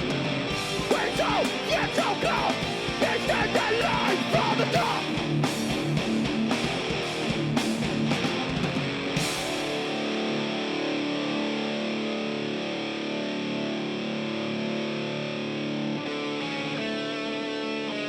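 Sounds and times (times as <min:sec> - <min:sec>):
distorted electric guitar chords: 0:00.0 - 0:18.0
picked single-note guitar line: 0:06.3 - 0:18.0.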